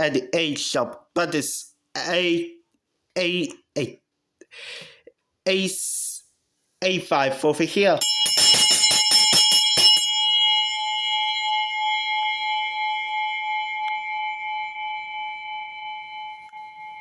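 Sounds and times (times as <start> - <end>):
brass handbell ringing: 8.0 - 17.0.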